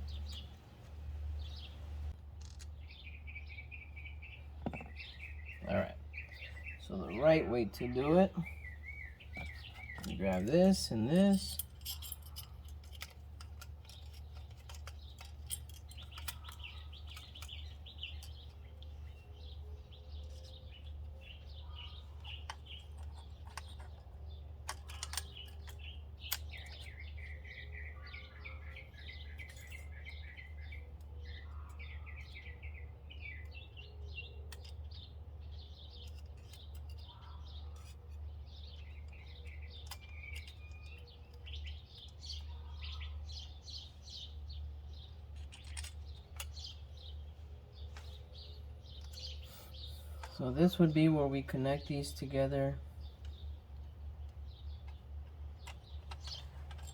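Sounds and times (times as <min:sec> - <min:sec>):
small birds chirping: 0:00.0 - 0:56.9.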